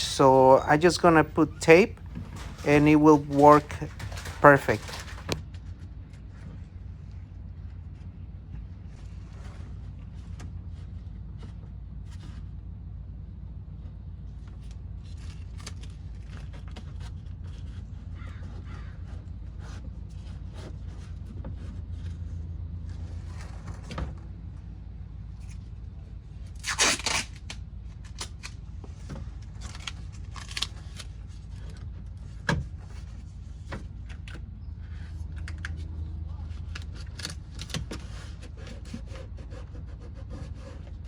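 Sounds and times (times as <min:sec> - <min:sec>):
tape pulled off roll: 0:26.5 - 0:31.8
tape ripping: 0:26.6 - 0:28.6.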